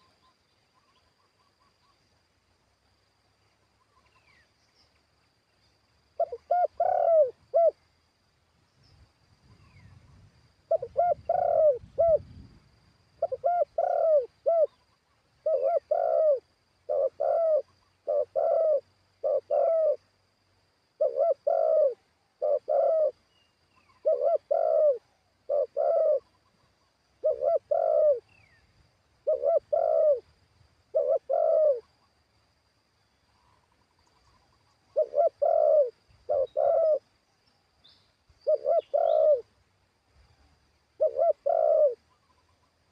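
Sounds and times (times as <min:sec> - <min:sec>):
dove cooing: 0:06.2 - 0:07.8, 0:10.6 - 0:12.4, 0:13.2 - 0:20.1, 0:21.0 - 0:23.2, 0:23.8 - 0:26.4, 0:27.2 - 0:28.5, 0:29.2 - 0:30.3, 0:30.9 - 0:31.9, 0:34.7 - 0:37.1, 0:38.4 - 0:39.5, 0:41.0 - 0:42.5.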